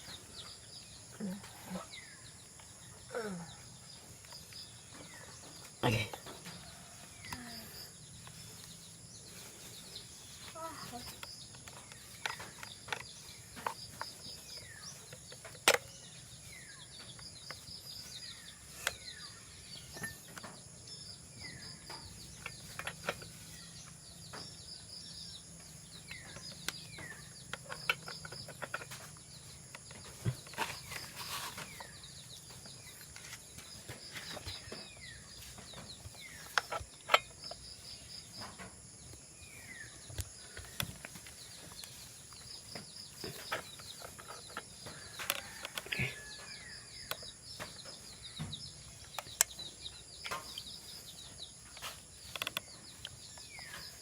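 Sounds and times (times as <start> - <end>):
birds chirping falling calls: 0.0 - 54.0
sharp clicks and knocks: 11.0 - 16.1, 26.0 - 39.2.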